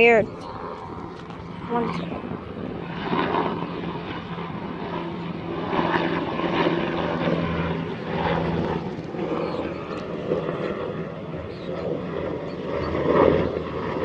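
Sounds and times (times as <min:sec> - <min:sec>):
distant aircraft drone: 0:00.0 - 0:14.0.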